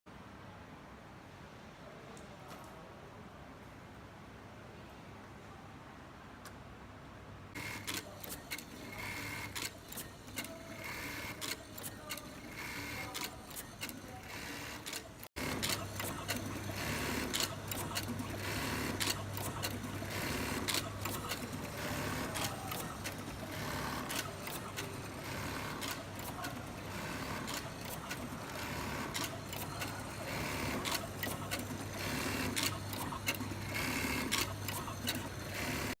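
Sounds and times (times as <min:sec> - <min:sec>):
fast machine stitching: 0:07.6 - 0:36.0
sewing machine motor hum: 0:07.6 - 0:36.0.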